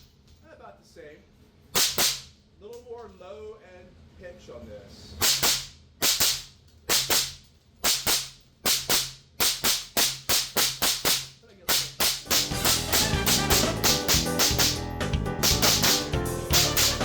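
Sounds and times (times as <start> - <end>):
sharp cracks with short echo: 1.8 - 2.3, 5.2 - 14.8, 15.4 - 17.0.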